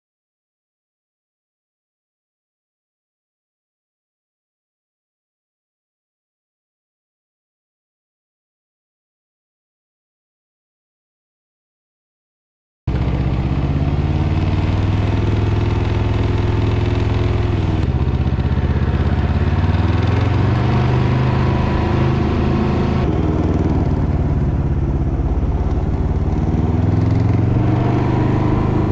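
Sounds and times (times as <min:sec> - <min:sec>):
engine revving: 0:12.9 - 0:28.9.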